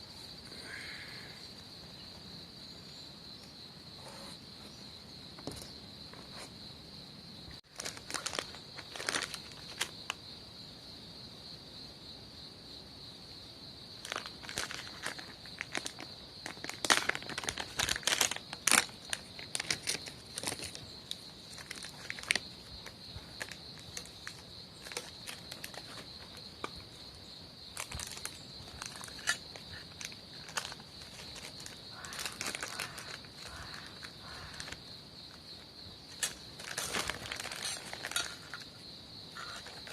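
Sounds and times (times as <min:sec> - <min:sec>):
insect chirring: 0:00.0 - 0:39.9
crackles and clicks: 0:07.6 - 0:10.2, 0:14.0 - 0:26.9, 0:27.7 - 0:35.4, 0:36.1 - 0:39.9.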